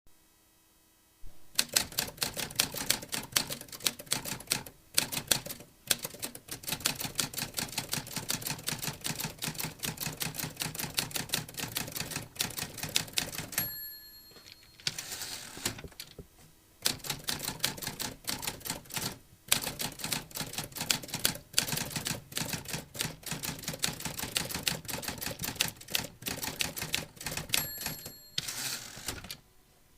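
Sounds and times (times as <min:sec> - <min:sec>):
typewriter typing: 0:01.5 - 0:13.7, 0:14.6 - 0:16.2, 0:16.8 - 0:29.4
typewriter bell ringing: 0:13.4 - 0:15.4, 0:27.4 - 0:29.2.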